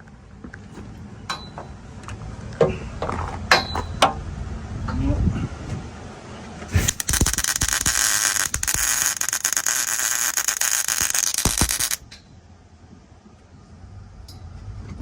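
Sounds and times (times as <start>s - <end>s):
electric arc welding crackling: 6.7s - 12.0s.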